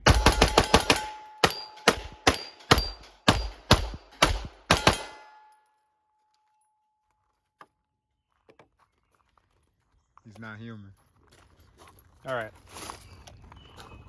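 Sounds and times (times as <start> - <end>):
pistol shots: 0.0 - 5.5.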